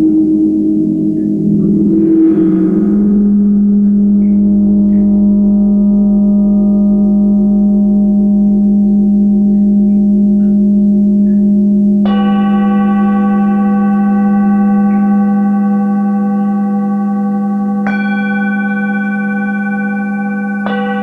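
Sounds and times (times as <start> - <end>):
singing bowl struck: 0.0 - 8.0
steady low ringing tone: 0.0 - 21.0.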